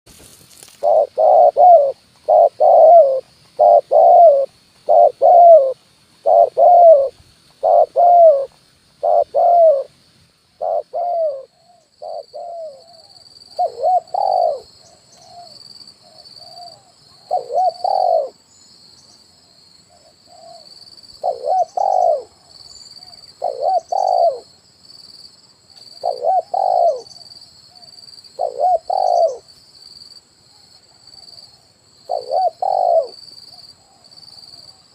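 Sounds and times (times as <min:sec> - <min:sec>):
dove cooing: 0:00.8 - 0:09.9, 0:10.6 - 0:18.4, 0:19.9 - 0:24.5, 0:25.8 - 0:27.8, 0:28.4 - 0:29.5, 0:32.0 - 0:34.0.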